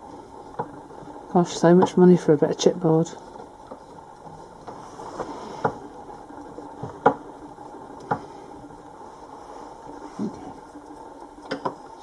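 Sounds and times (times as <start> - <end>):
faint steady hum: 0.0 - 12.0
sharp knocks and clicks: 6.8 - 7.3, 11.4 - 11.8.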